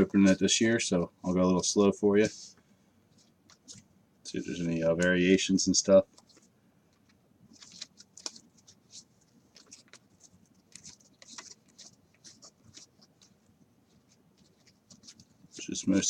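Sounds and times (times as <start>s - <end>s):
cards sliding and flipping: 7.5s - 13.4s.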